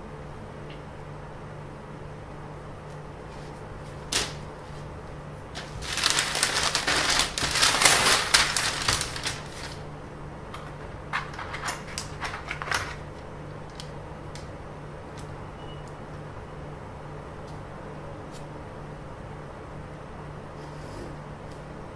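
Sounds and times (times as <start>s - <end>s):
low electrical hum: 0.0s - 21.9s
crinkling handling noise: 2.8s - 15.4s.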